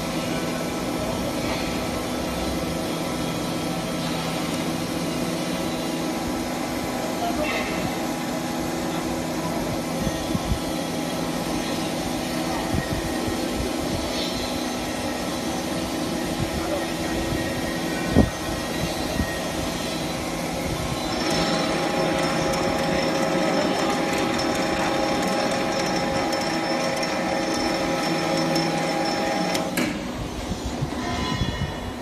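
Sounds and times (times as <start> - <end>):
industrial machinery humming and whining: 0.0 - 32.0.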